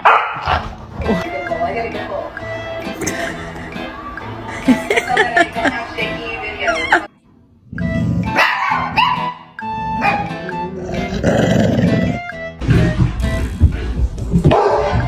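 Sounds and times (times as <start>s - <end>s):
dog barking and growling: 0.0s - 1.2s, 7.7s - 12.3s, 14.3s - 15.0s
background music: 0.0s - 15.0s.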